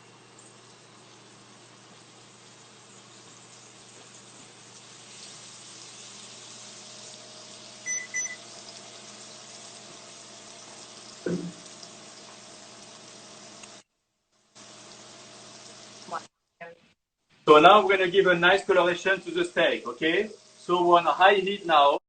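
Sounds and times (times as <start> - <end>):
steaks sizzling in a pan: 0.0 - 13.8, 14.4 - 16.3, 18.6 - 22.0
short electronic beeps: 7.9 - 8.4.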